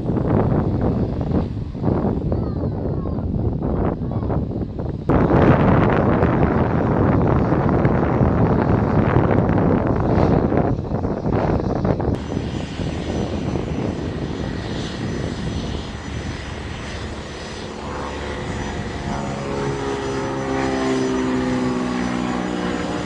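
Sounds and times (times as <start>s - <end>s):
airplane engine rushing noise: 0.0s - 23.0s
humming engine tones: 0.0s - 23.0s.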